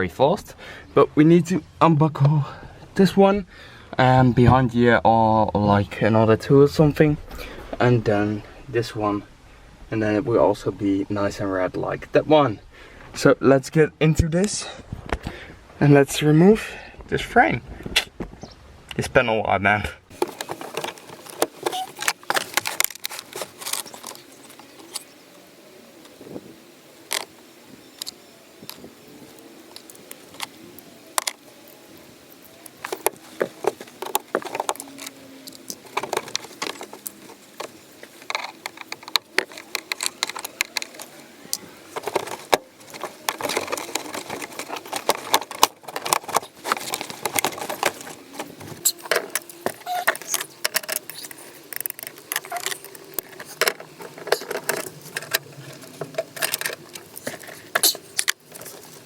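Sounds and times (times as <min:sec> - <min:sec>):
plastic trim clicking and rattling: 0:42.0 - 0:58.7.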